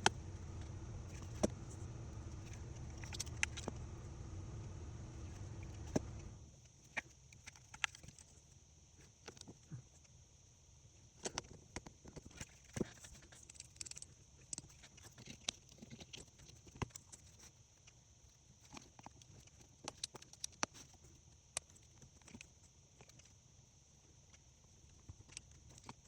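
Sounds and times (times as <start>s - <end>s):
faint hiss: 0.0s - 6.5s.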